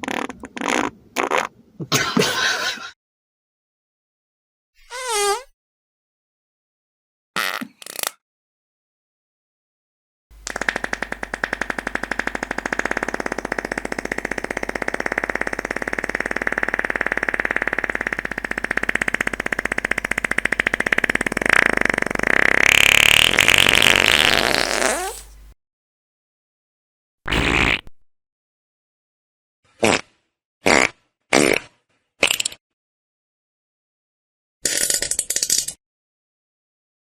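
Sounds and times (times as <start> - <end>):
fart sound effect: 4.8 - 5.5, 12.3 - 25.3, 27.3 - 28.0.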